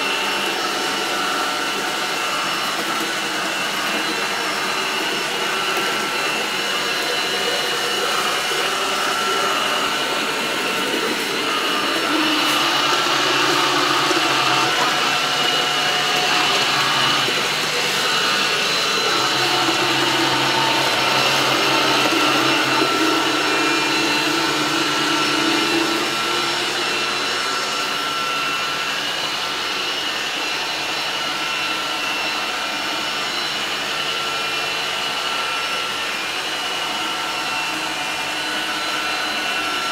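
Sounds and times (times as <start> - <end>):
robot vacuum cleaner whirring: 0.0 - 39.9.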